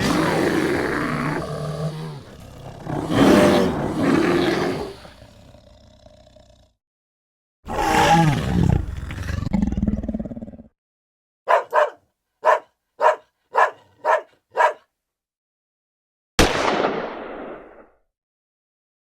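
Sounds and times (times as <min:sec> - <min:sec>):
big animal roar: 0:00.0 - 0:06.8, 0:07.7 - 0:10.7
dog barking: 0:11.5 - 0:14.9.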